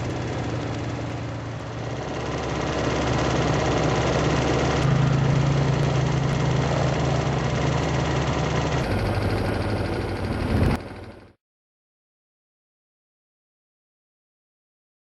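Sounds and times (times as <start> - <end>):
atv engine running: 0.0 - 11.4.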